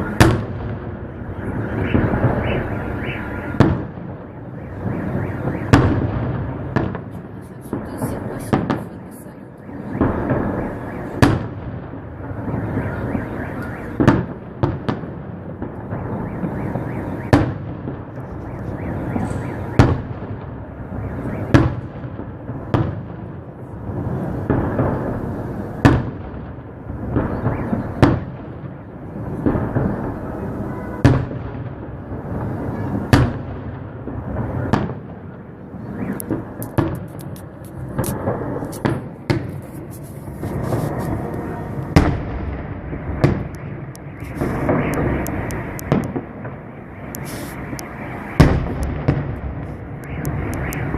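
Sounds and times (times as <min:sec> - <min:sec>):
continuous rumbling: 0:00.0 - 0:50.9
fireworks shells bursting: 0:36.1 - 0:50.9.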